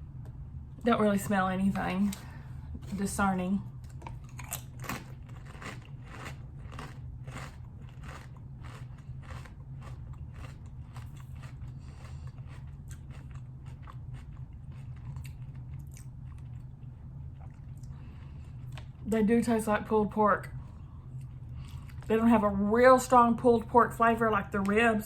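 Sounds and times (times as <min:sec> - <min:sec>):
steady low hum: 0:00.0 - 0:25.0
person chewing crunchy chips: 0:03.9 - 0:19.0.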